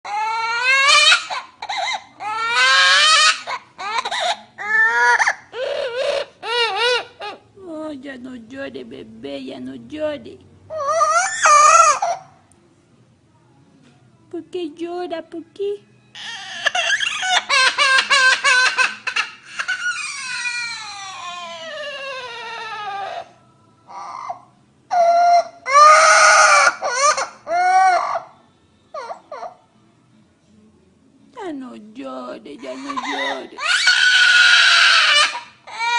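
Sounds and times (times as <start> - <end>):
infant crying: 0.0 - 7.5, 10.7 - 12.4, 16.2 - 28.3, 28.9 - 29.6, 32.6 - 35.9.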